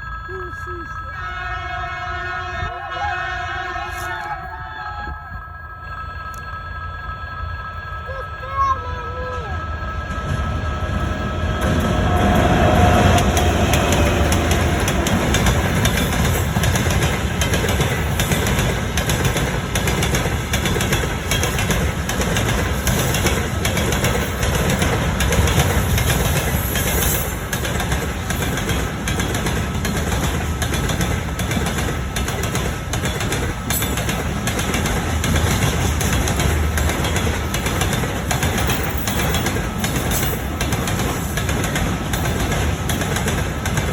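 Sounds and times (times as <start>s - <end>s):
train passing: 0.0s - 43.9s
wheels clattering over rails: 10.0s - 43.9s.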